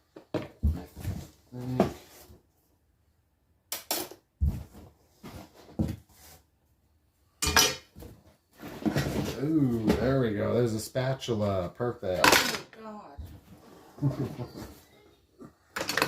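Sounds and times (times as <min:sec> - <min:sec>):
silverware clattering in metal pan: 0:07.4 - 0:07.9, 0:12.2 - 0:12.7, 0:15.8 - 0:16.0.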